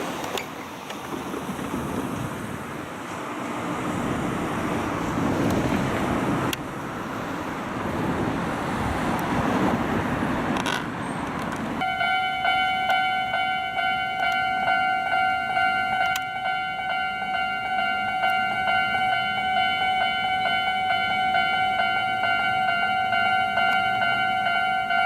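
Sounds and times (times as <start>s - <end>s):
road traffic noise: 0.0s - 25.0s
level crossing alarm bell: 11.8s - 25.0s.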